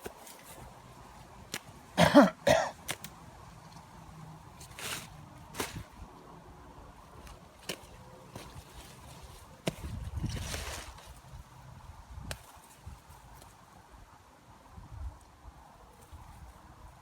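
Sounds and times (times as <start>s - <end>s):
person coughing: 2.0s - 2.8s.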